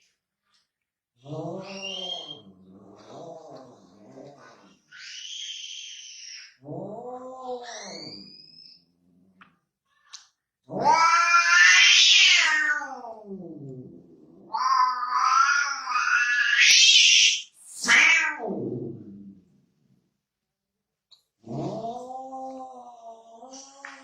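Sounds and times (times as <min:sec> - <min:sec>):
cat yowling: 0:10.7 - 0:13.3, 0:14.5 - 0:18.5.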